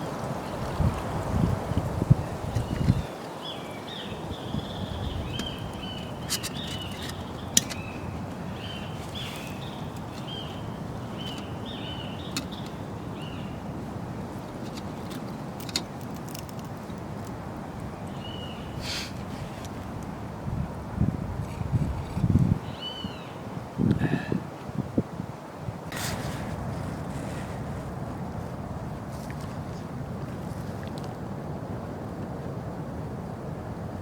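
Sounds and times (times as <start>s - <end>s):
outdoor background hiss: 0.0s - 30.6s
bird chirping: 2.6s - 13.6s.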